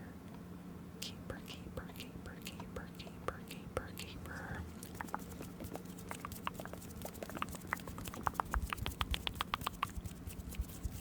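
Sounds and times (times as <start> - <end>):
tongue clicks: 4.8 - 10.6.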